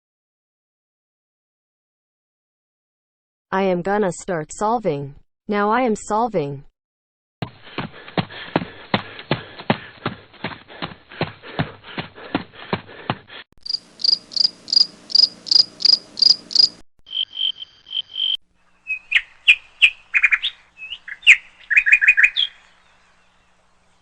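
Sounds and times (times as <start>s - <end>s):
bird-like chirps and trills: 14.0s - 24.0s.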